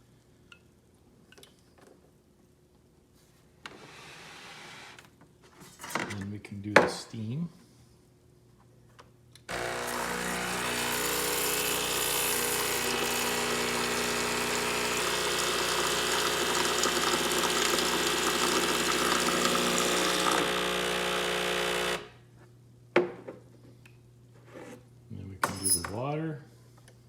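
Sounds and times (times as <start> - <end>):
steam wand hissing: 9.5 - 22.0
pump buzzing: 9.5 - 22.2.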